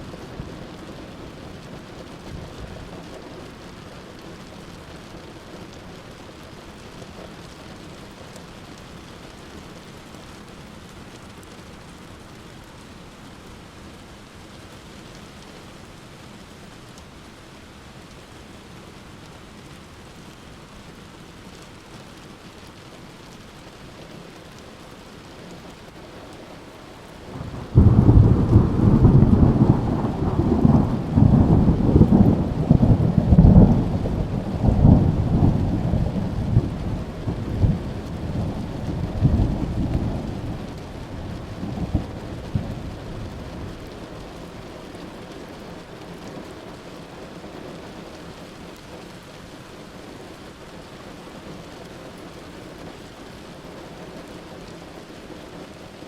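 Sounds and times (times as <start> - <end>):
steady rain falling: 0.0 - 56.0
thunderclap and rumble: 27.0 - 44.6.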